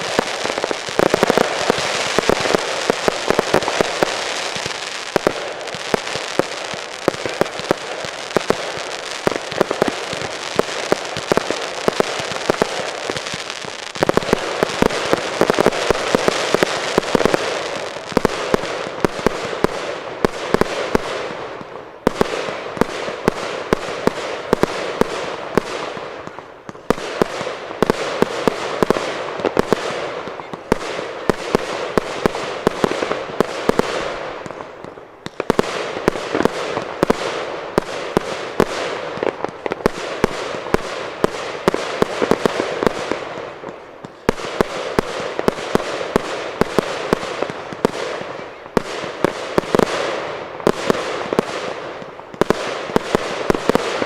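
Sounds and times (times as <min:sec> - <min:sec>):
fireworks bangs and cracks: 0:00.0 - 0:54.0.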